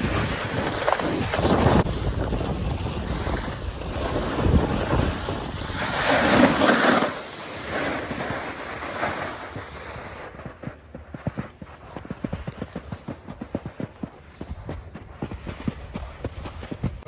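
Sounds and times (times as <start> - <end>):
wind rushing over microphone: 0.0 - 8.8
snowboard scraping over snow: 0.0 - 17.0.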